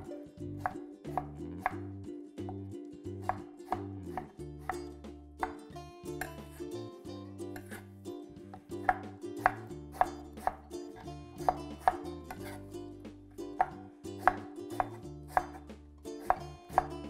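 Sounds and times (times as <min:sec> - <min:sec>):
background music: 0:00.0 - 0:17.0
knife chopping on cutting board: 0:00.6 - 0:01.8, 0:03.3 - 0:05.6, 0:07.6 - 0:07.8, 0:08.6 - 0:10.7, 0:11.4 - 0:12.6, 0:13.6 - 0:17.0.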